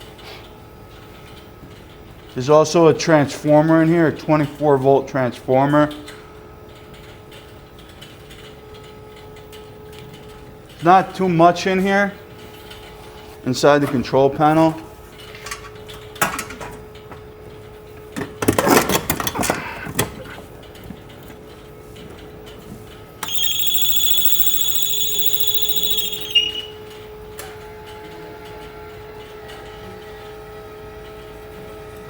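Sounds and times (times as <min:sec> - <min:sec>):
faint steady hum: 0:23.2 - 0:26.8
high-pitched electronic beep: 0:23.2 - 0:26.8.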